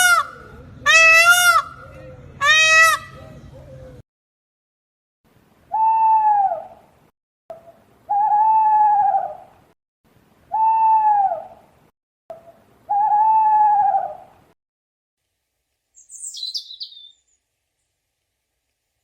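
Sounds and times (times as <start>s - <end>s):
owl calling: 16.0s - 17.2s.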